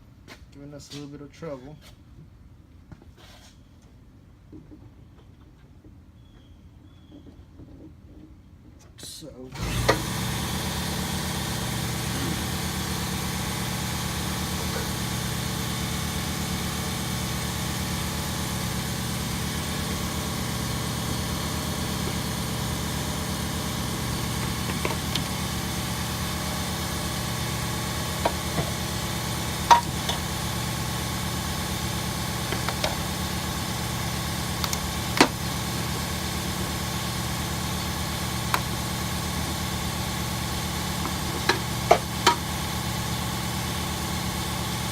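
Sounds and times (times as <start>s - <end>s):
motor drone: 9.5s - 44.9s.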